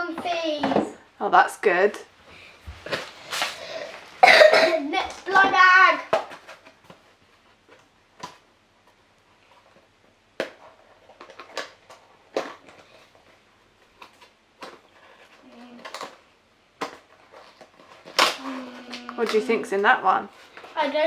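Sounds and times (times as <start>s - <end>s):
plastic packaging clicking and crackling: 10.4s - 21.0s.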